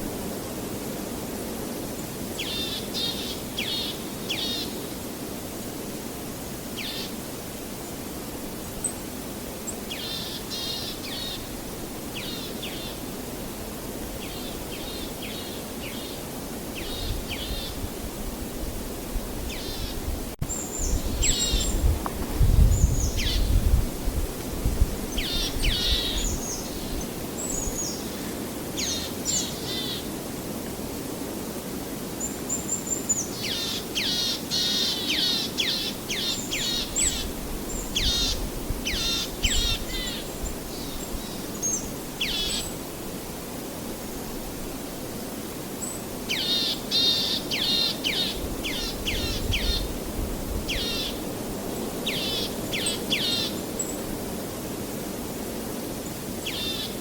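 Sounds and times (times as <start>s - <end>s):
background hiss: 0.0s - 57.0s
songbirds chirping: 25.1s - 30.2s.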